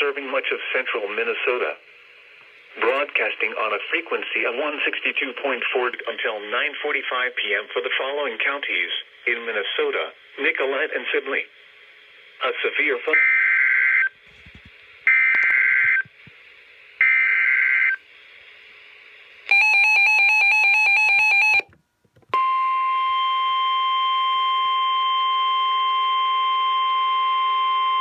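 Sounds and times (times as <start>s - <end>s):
steady warning alarm tone: 19.5s - 21.7s.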